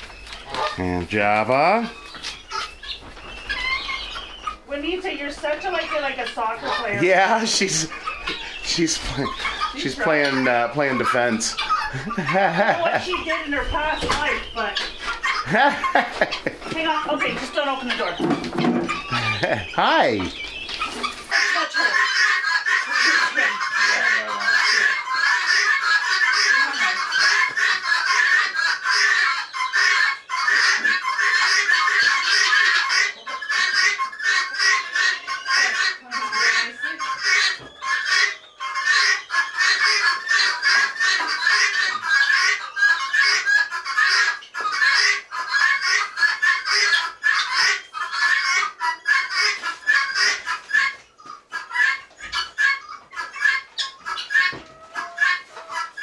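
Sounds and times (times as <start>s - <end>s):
many birds clucking and chirping: 0.0s - 56.0s.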